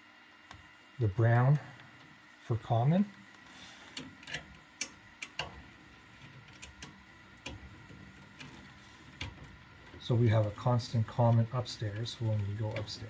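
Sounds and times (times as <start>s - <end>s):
light clicks and taps of tools: 3.2s - 5.6s.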